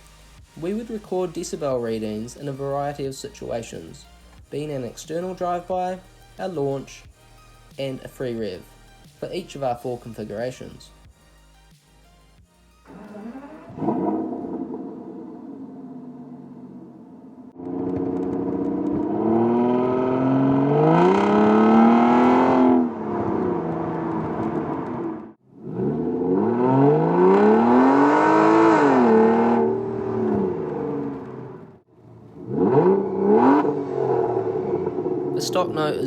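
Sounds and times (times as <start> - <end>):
car engine revving hard: 12.9 - 31.8, 32.4 - 35.4.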